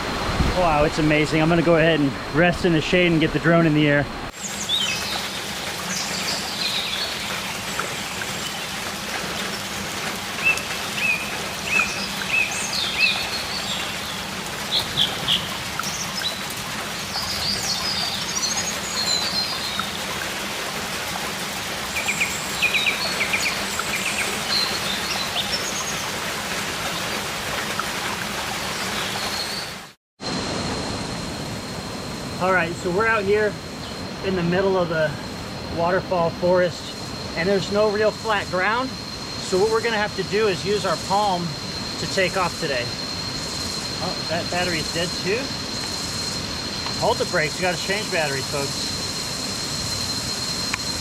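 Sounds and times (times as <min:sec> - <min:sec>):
waterfall rushing: 0:00.0 - 0:04.3
birds chirping and trilling: 0:00.6 - 0:20.0, 0:21.9 - 0:26.2.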